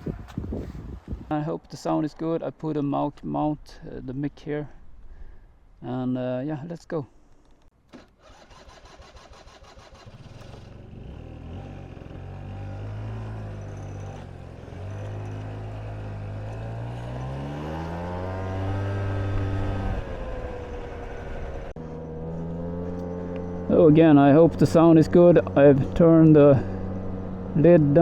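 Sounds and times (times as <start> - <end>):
vehicle engine accelerating: 10.0 - 28.0.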